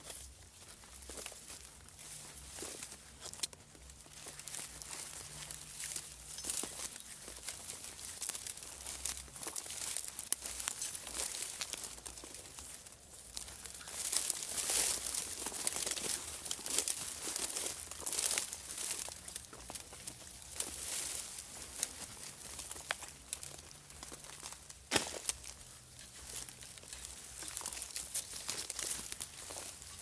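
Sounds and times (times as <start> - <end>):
dry foliage rustling and crackling: 0.0 - 30.0.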